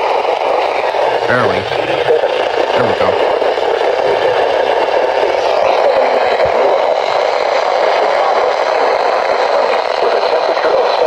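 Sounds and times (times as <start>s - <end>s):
radio static hiss: 0.8s - 5.8s.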